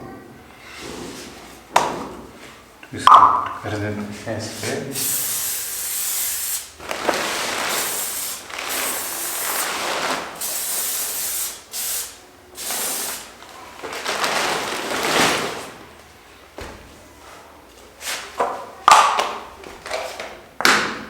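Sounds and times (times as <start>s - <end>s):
spray hissing in bursts: 4.6s - 13.5s.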